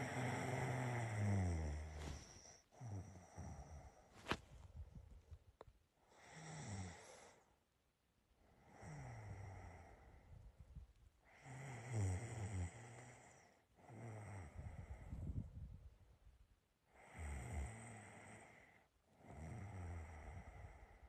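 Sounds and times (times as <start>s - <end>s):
person snoring: 0.0s - 4.0s, 6.2s - 7.4s.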